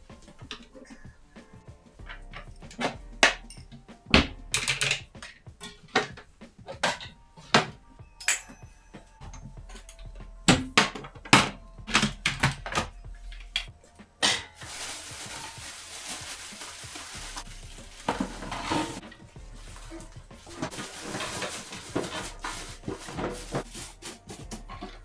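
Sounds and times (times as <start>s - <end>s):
dishes and utensils clinking: 0.1s - 25.0s
food sizzling in a pan: 14.6s - 19.0s.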